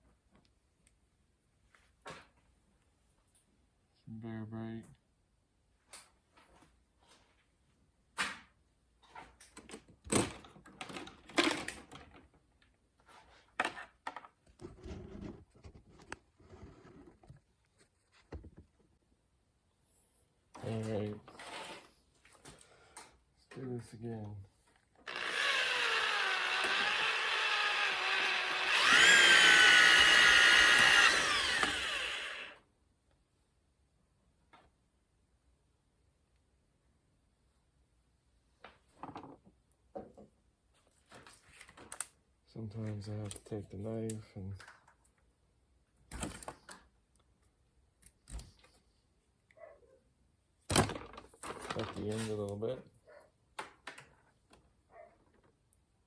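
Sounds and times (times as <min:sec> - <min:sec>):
power drill motor whining: 0:25.0 - 0:32.6.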